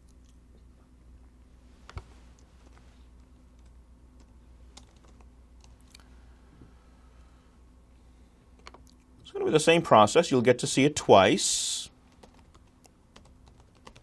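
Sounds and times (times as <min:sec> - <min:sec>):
low steady hum: 0:00.0 - 0:14.0
computer keyboard clicks: 0:03.6 - 0:06.0, 0:12.2 - 0:14.0.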